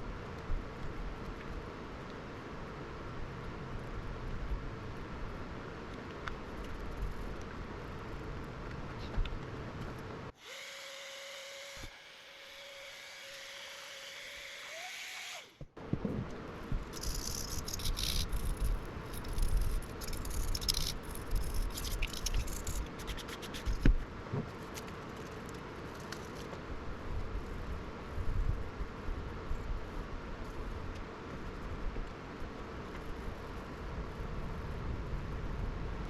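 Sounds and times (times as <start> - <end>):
small electric motor whirring: 10.4 - 15.6, 17.0 - 23.8.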